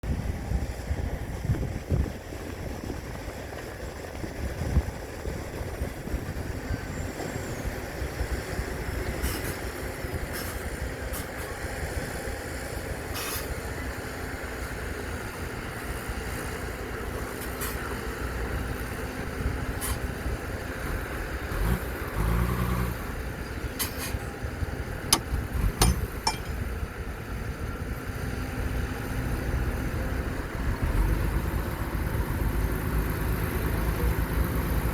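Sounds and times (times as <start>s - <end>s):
model truck motor noise: 1.0s - 34.9s
sharp clicks and knocks: 25.1s - 26.6s.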